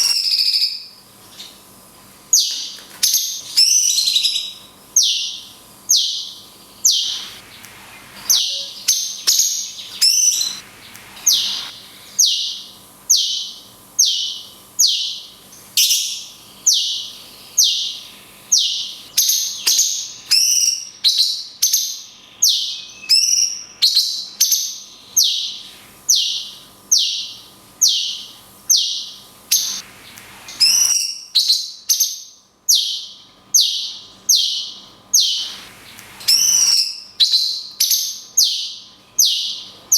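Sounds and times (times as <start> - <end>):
bird song high downward note: 6.9 - 13.4.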